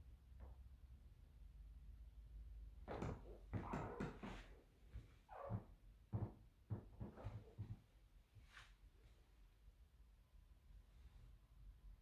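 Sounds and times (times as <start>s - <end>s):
wooden floorboards creaking: 2.9s - 4.5s, 5.3s - 7.8s.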